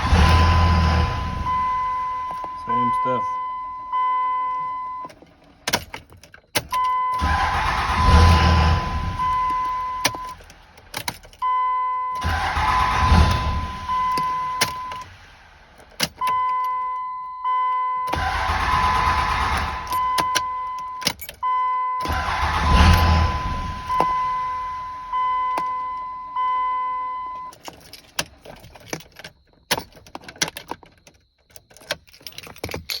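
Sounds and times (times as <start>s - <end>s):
warning chime beeping: 0.0s - 5.0s, 20.0s - 27.5s
diesel engine cranking: 0.0s - 33.0s.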